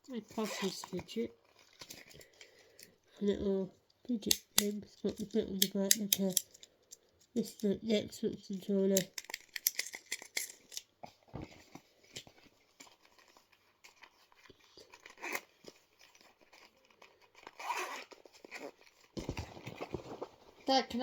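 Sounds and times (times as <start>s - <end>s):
plastic toys clicking: 4.2s - 7.7s, 8.8s - 10.9s
rustling: 9.2s - 21.0s.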